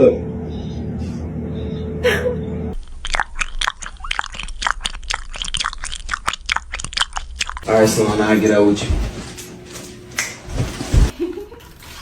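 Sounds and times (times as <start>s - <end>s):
steady hum: 0.0s - 5.1s, 7.3s - 11.1s.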